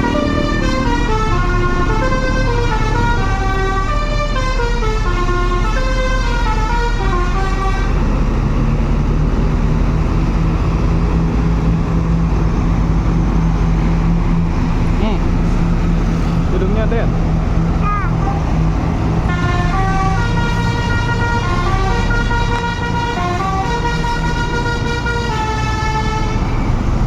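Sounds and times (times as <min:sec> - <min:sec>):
multi-tone bus horn melody: 0:00.0 - 0:08.1, 0:19.2 - 0:26.9
bus engine droning: 0:00.0 - 0:27.0.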